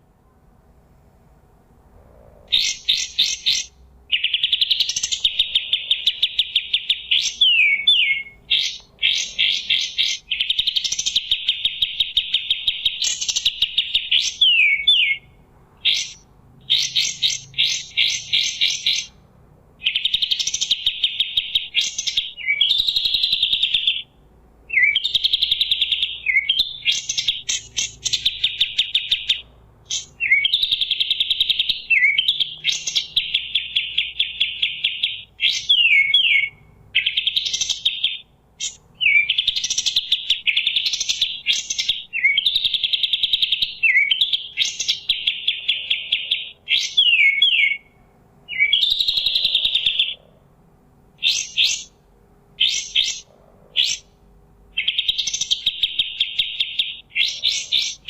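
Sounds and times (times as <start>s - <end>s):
bird sweeping whistled notes: 2.2s - 15.3s
songbird chattering trills: 2.2s - 19.2s, 19.8s - 50.4s, 51.2s - 52.0s, 52.6s - 58.0s.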